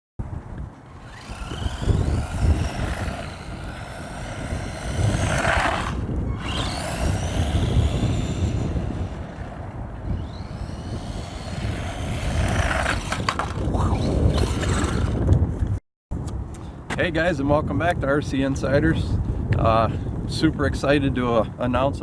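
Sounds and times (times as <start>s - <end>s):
electric motor whining: 0.7s - 15.2s
tyres rumbling on ground: 0.8s - 15.3s.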